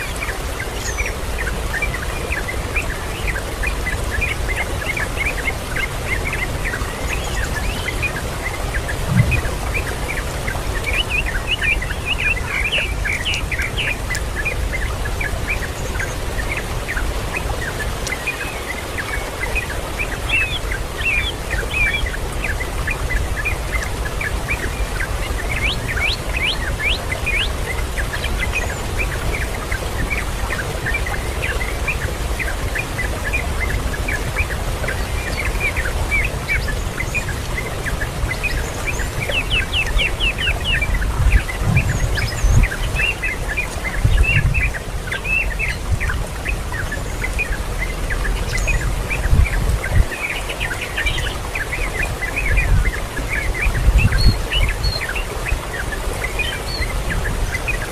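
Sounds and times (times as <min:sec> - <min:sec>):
small birds chirping: 0:00.0 - 0:57.9
low thumps: 0:09.0 - 0:09.9
steady low rumble: 0:09.0 - 0:10.2.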